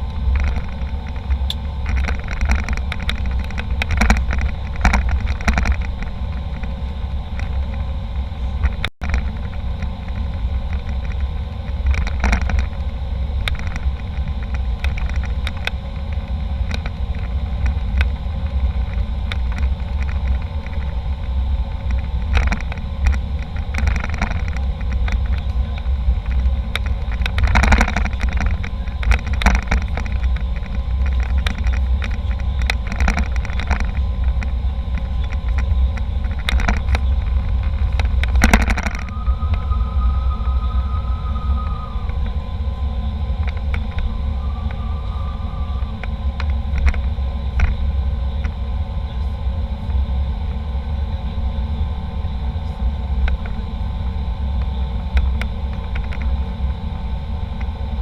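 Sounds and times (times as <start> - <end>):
airliner cabin rumble: 0.0 - 58.0
small knocks and rattles: 0.3 - 6.7, 21.8 - 40.0.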